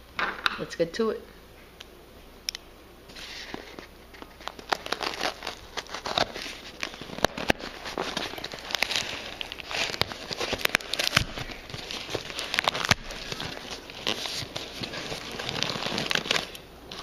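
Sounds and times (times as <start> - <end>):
crinkling of wrapping: 3.1 - 17.0.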